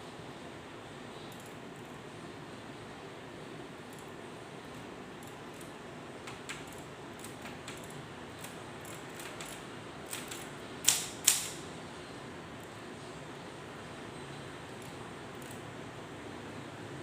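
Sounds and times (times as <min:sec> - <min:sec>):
typewriter mechanism clicking: 0:05.2 - 0:11.6
typewriter clacks: 0:05.5 - 0:11.6.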